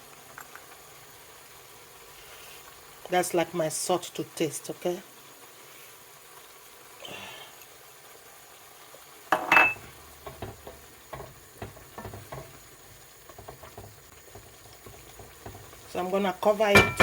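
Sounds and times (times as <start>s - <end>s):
spoon clanking against metal pot: 9.4s - 12.6s, 16.7s - 17.0s
spoon stirring and scraping pot: 9.4s - 17.0s.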